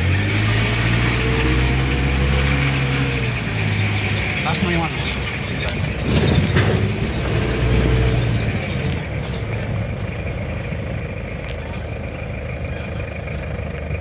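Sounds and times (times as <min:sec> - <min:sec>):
vehicle engine running: 0:00.0 - 0:14.0.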